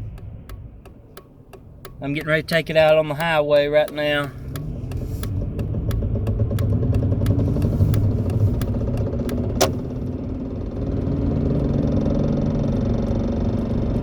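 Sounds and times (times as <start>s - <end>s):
quick regular ticking: 0.0s - 10.0s
car engine hum: 0.0s - 14.0s.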